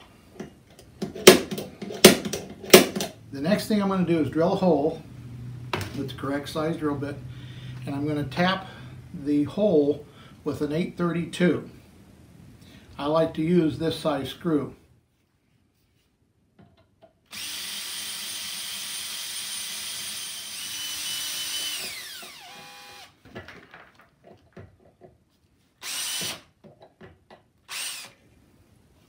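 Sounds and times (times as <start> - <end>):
drill whining: 17.3 - 23.2, 25.8 - 26.5, 27.7 - 28.2.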